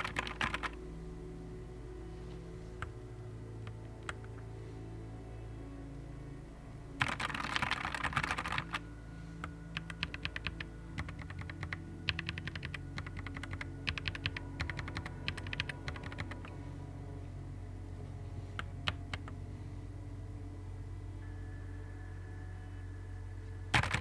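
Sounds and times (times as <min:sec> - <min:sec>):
mechanical keyboard typing: 0:00.0 - 0:00.8, 0:07.0 - 0:08.8, 0:09.8 - 0:16.5, 0:23.7 - 0:24.0.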